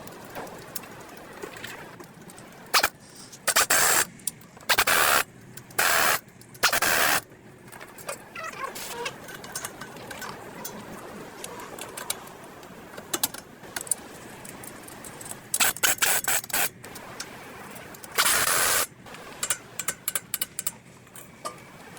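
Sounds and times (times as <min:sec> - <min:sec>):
loud burst of hiss: 0:02.8 - 0:04.1, 0:04.7 - 0:05.2, 0:05.8 - 0:07.2, 0:18.2 - 0:18.9
metallic clicks of tools: 0:19.4 - 0:21.6.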